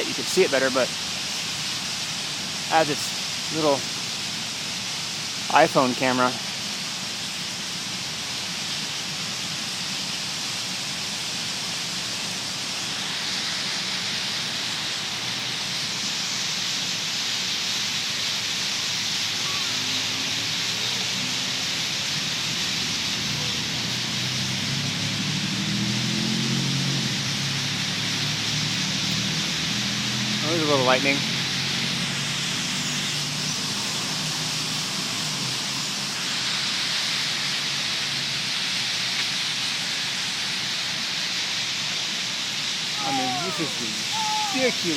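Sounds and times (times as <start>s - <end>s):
flock of birds chirping: 19.0s - 21.1s, 42.9s - 44.9s.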